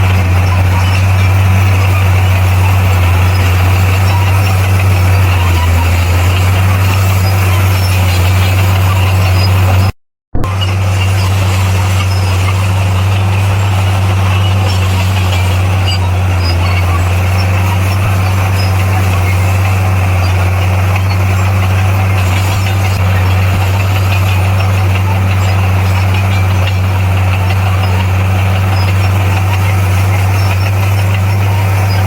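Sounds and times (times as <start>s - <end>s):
diesel engine droning: 0.0s - 32.0s.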